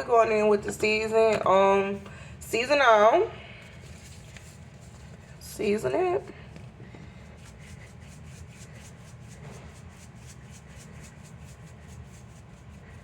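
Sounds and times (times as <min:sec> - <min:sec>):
low steady hum: 0:00.0 - 0:13.0
scratchy seasoning strokes: 0:07.1 - 0:13.0.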